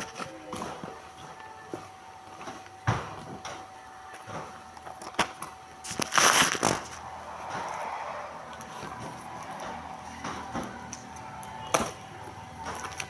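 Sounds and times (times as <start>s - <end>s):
loud packaging rustle: 5.1s - 7.0s.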